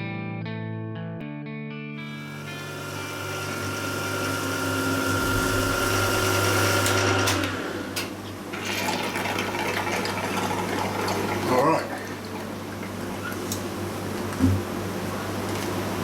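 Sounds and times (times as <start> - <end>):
end mill cutting metal: 2.3 - 8.1
milling machine motor hum: 2.3 - 14.9.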